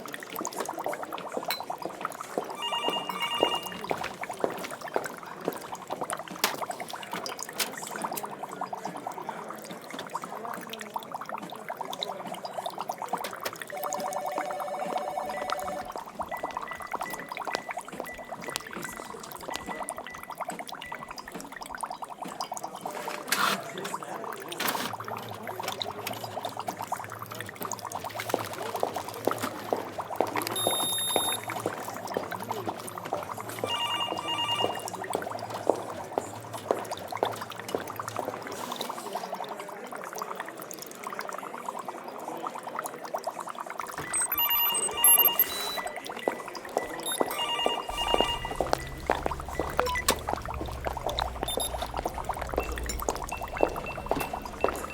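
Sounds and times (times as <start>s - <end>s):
liquid bubbling: 0.0s - 54.9s
electronic beeps: 2.5s - 4.1s, 13.7s - 21.3s, 30.6s - 31.6s, 33.6s - 35.2s, 44.0s - 54.9s
low machine hum: 47.9s - 54.9s.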